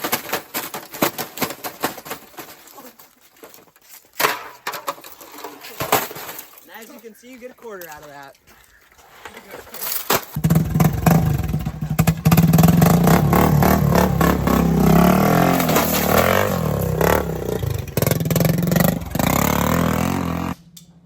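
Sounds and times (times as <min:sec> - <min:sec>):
rapid clattering and scraping: 0:00.0 - 0:20.3.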